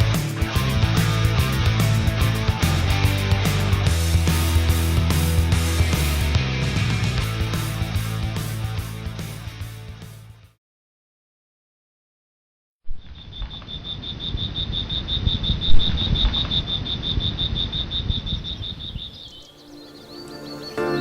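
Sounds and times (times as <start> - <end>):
faint bird chirps: 12.9 - 20.8
cricket trilling: 13.2 - 20.2.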